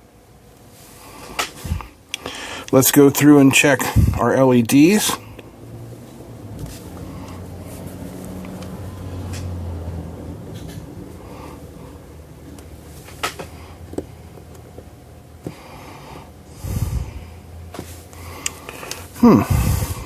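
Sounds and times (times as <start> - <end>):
steady low hum: 0.0 - 20.0
short breath: 1.3 - 2.7, 15.5 - 17.4, 18.2 - 20.0.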